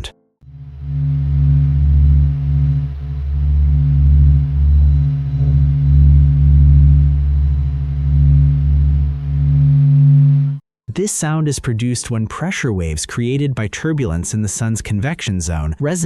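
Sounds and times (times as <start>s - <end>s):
low pulsating hum: 0.4s - 10.6s.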